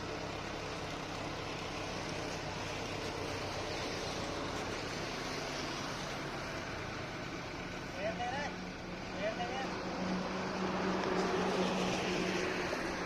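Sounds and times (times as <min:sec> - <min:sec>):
tractor engine running: 0:00.0 - 0:13.0.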